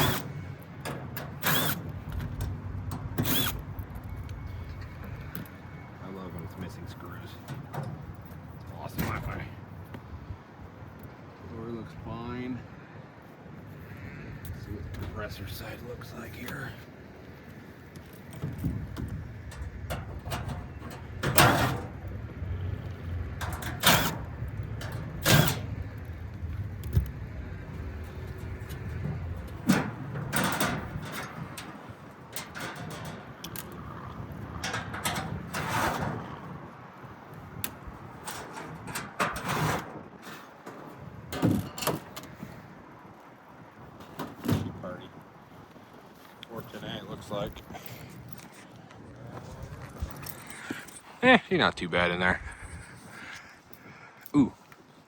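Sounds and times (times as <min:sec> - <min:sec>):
sheet-metal panels clanking: 0:18.4 - 0:22.0, 0:23.4 - 0:25.7, 0:29.0 - 0:31.8, 0:32.4 - 0:33.3, 0:34.6 - 0:36.2.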